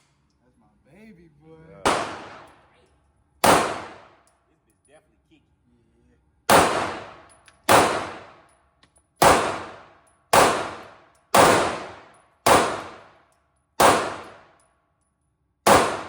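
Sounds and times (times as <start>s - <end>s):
pistol shots echoing: 1.8s - 2.6s, 3.4s - 4.2s, 6.5s - 8.4s, 9.2s - 13.1s, 13.8s - 14.5s, 15.7s - 16.0s.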